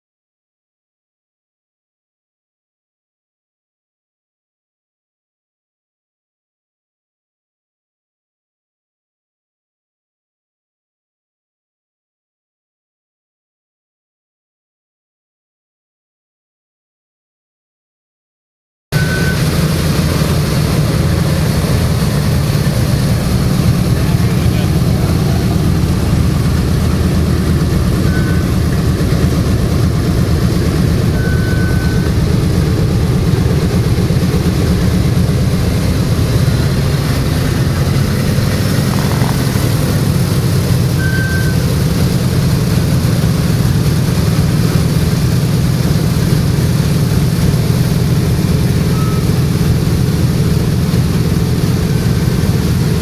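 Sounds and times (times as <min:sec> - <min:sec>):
piston aircraft engines droning: 0:19.0 - 0:53.0.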